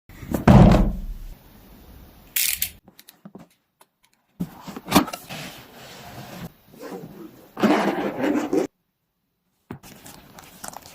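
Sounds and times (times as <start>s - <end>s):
packaging rustling: 9.8s - 10.9s.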